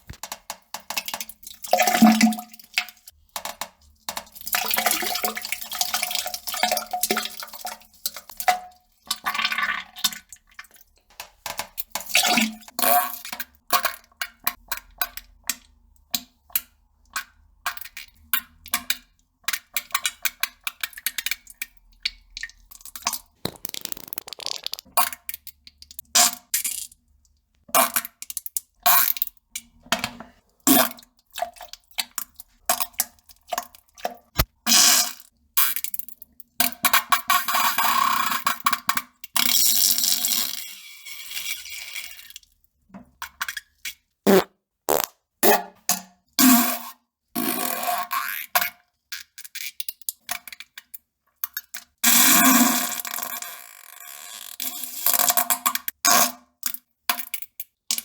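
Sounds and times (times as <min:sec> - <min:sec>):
plops and splashes in toilet water: 0:00.8 - 0:02.9, 0:23.5 - 0:24.9.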